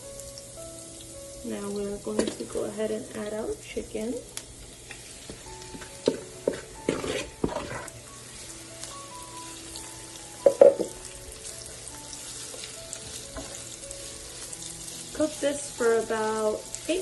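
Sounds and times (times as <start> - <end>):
chicken sizzling in hot oil: 0.0 - 17.0
utensil knocking against pan: 10.4 - 11.0.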